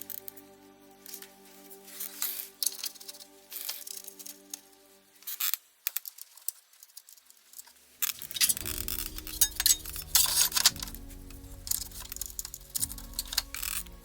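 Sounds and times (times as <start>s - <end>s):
background music: 0.0s - 5.4s, 8.1s - 14.0s.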